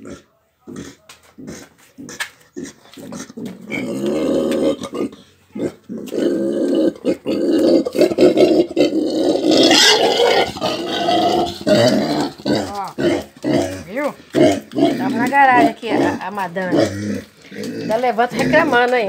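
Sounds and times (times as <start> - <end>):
pig grunting and grumbling: 0.0 - 19.0
pig sharp high cry: 9.3 - 12.8.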